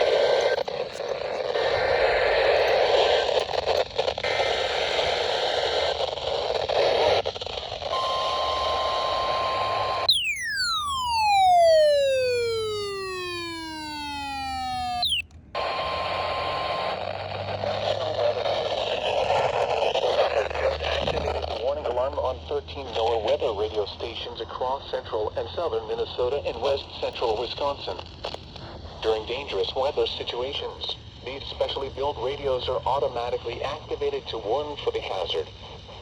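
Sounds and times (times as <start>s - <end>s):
steady high tone: 0.0s - 3.8s, 8.4s - 15.2s
radio static hiss: 0.0s - 36.0s
whistle falling in pitch: 10.0s - 15.2s.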